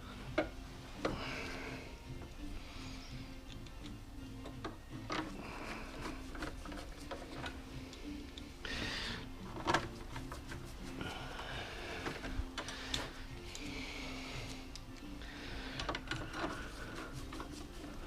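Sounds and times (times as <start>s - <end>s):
clicks and knocks of parts handled: 3.4s - 5.4s, 15.8s - 17.9s.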